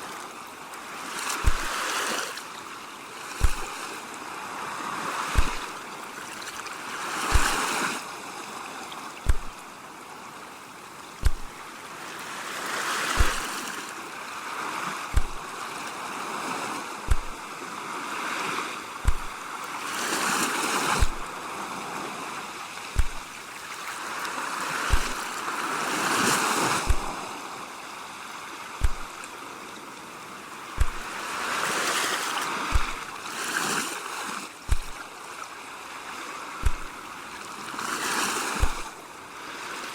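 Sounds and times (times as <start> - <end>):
sea waves washing in: 0.0 - 39.9
soft deep thump: 1.4 - 1.7, 3.4 - 3.7, 5.4 - 5.7, 7.3 - 7.6, 9.3 - 9.6, 11.2 - 11.6, 13.2 - 13.5, 15.1 - 15.4, 17.1 - 17.4, 19.0 - 19.4, 21.0 - 21.3, 23.0 - 23.4, 24.9 - 25.2, 26.8 - 27.2, 28.8 - 29.2, 30.8 - 31.1, 32.7 - 33.0, 34.7 - 35.0, 36.6 - 37.0, 38.6 - 39.0.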